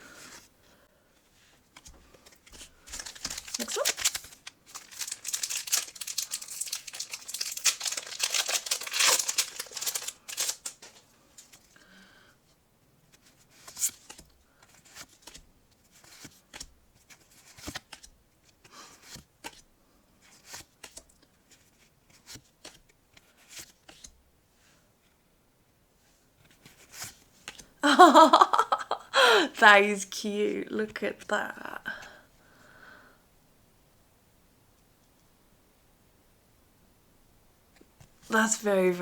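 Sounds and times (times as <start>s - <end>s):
cards rustling and clicking: 1.7s - 11.7s
wrapper tearing and crinkling: 2.9s - 11.5s.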